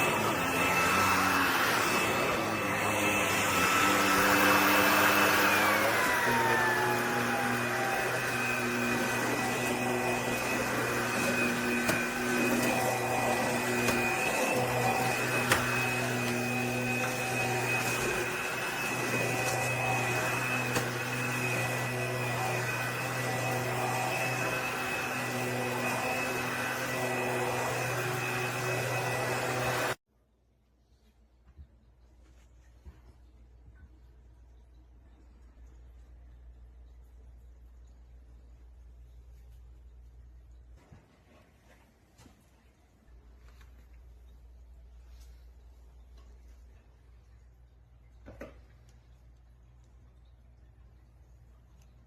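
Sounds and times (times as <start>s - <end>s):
stick vacuum running: 0.0s - 30.0s.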